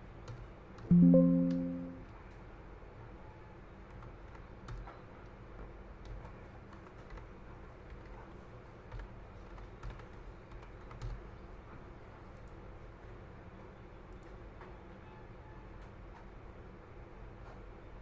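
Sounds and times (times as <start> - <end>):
keyboard typing: 0.3 - 2.0, 9.4 - 11.2.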